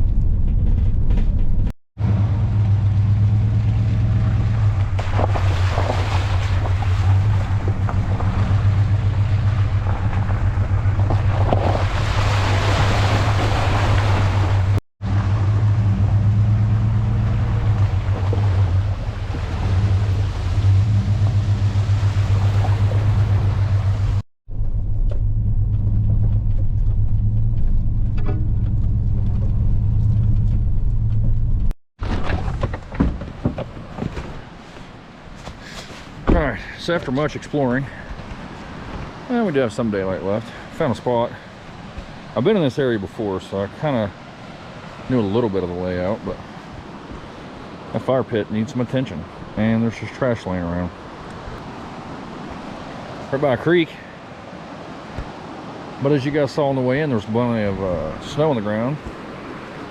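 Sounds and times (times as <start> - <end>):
truck engine droning: 0.0 - 31.8.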